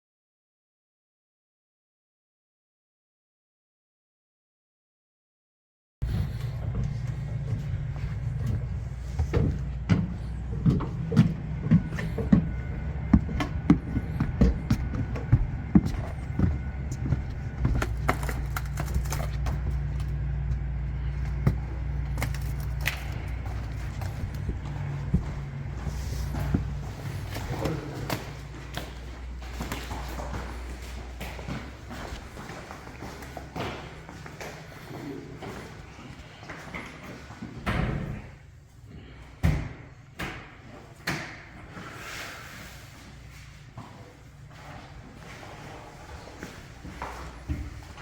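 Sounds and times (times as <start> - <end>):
steady low hum: 6.0 - 48.0
irregular knocks taps and clicks: 9.2 - 18.3.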